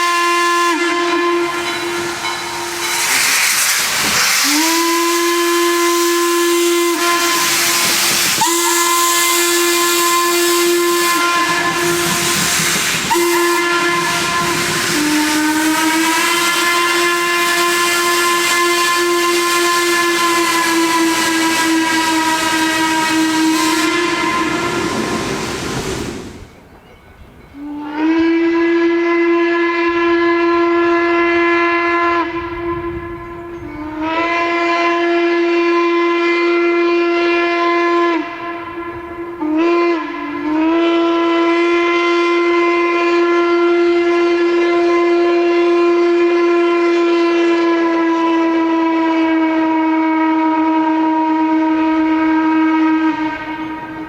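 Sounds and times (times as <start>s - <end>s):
deep steam whistle blasts: 0.0s - 26.6s, 27.5s - 54.0s
steam hiss: 0.0s - 26.9s.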